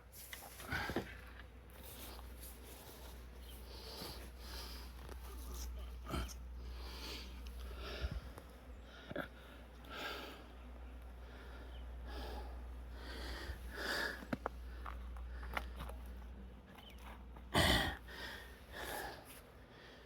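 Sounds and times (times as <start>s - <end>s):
person breathing and sniffing: 17.6s - 20.0s.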